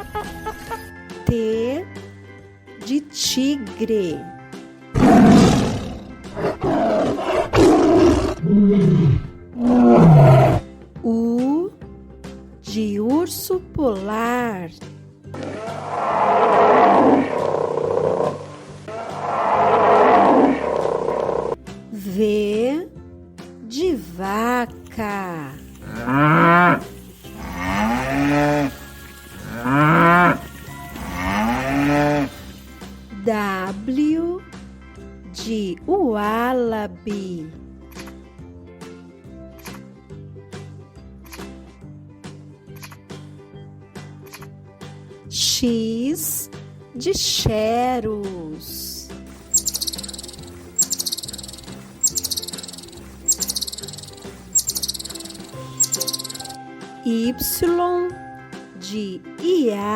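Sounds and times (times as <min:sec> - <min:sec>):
tiger roaring and growling: 0:05.0 - 0:10.7, 0:15.4 - 0:21.6, 0:25.8 - 0:28.8, 0:29.4 - 0:30.4, 0:31.0 - 0:32.3
cow mooing: 0:25.9 - 0:28.8, 0:29.4 - 0:32.3.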